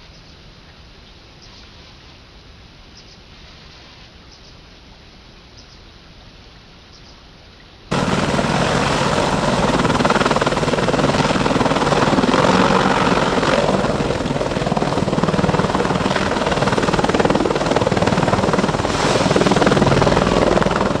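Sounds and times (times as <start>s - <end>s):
helicopter rotor and engine noise: 7.9s - 21.0s.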